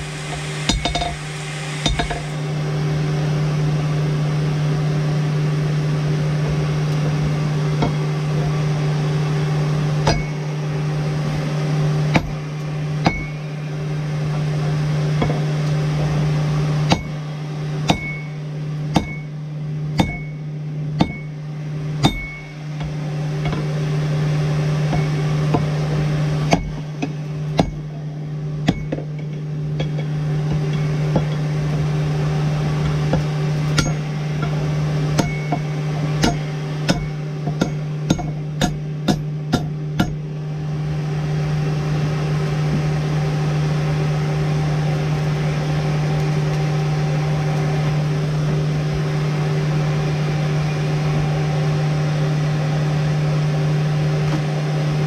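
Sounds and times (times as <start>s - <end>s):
hammer striking steel on anvil: 0.0s - 2.4s, 10.0s - 10.4s, 12.1s - 12.4s, 13.0s - 13.4s, 17.9s - 18.3s, 18.9s - 19.3s, 20.0s - 20.4s, 21.0s - 21.4s, 22.0s - 23.6s, 28.6s - 31.4s, 33.1s - 40.3s
steady low hum: 0.0s - 55.0s.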